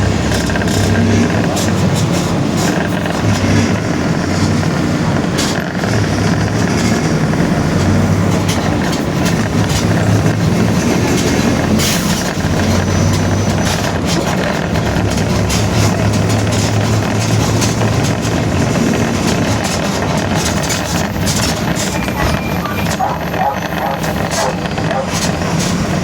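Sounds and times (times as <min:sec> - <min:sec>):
body rattles and clicks: 0:00.0 - 0:26.0
diesel bus engine running: 0:00.0 - 0:26.0
differential growling: 0:20.6 - 0:26.0.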